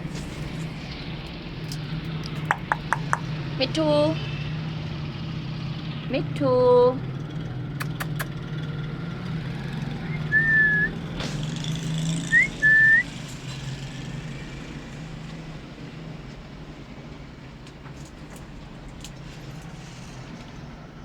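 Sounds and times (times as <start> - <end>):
short clear whistles: 10.0 - 11.0, 12.2 - 13.1.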